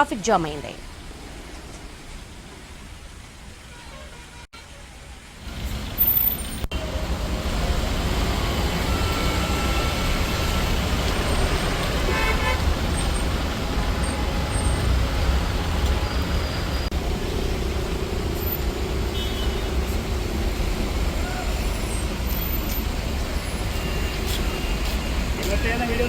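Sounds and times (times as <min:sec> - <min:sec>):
low traffic rumble: 0:00.0 - 0:26.0
vehicle horns honking: 0:03.7 - 0:04.6, 0:11.2 - 0:16.9, 0:19.1 - 0:19.8.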